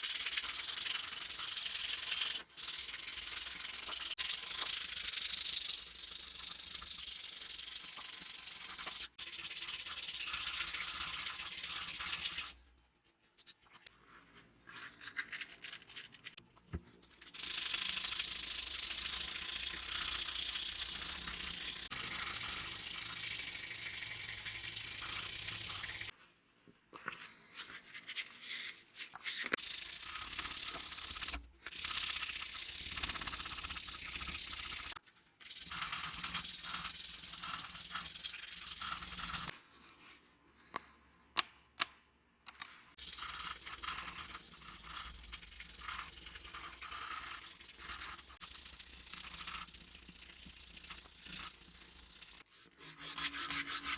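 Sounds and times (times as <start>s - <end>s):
sanding hiss: 17.4s - 26.1s.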